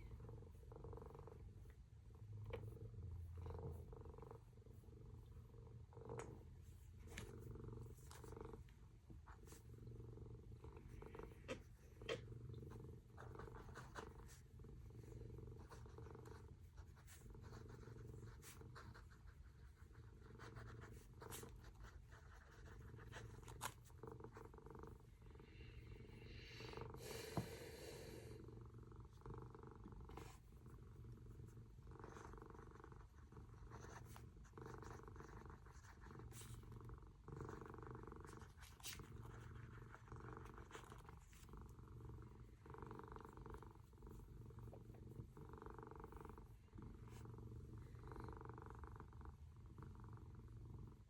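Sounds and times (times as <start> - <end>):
faint low hum: 0.0 - 51.0.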